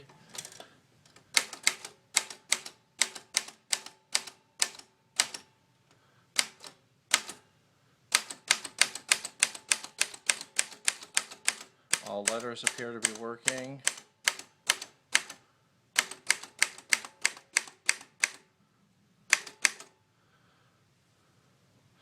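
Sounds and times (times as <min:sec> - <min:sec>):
manual typewriter typing: 0:00.3 - 0:05.4, 0:06.4 - 0:07.4, 0:08.1 - 0:15.4, 0:16.0 - 0:18.4, 0:19.3 - 0:19.9.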